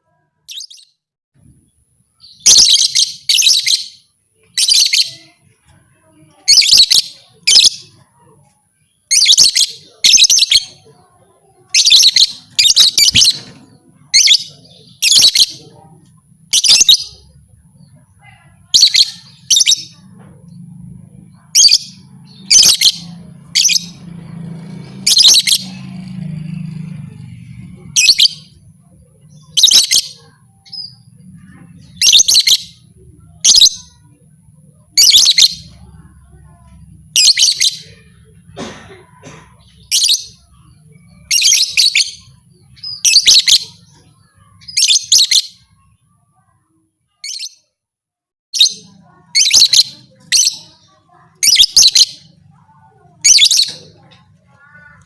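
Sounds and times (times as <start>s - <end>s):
lovebird chirping: 0.5s - 1.0s, 2.2s - 5.4s, 6.4s - 8.0s, 8.9s - 10.8s, 11.6s - 15.9s, 16.5s - 18.0s, 18.7s - 20.6s, 21.4s - 24.1s, 27.8s - 28.6s, 29.2s - 34.1s, 39.7s - 46.5s.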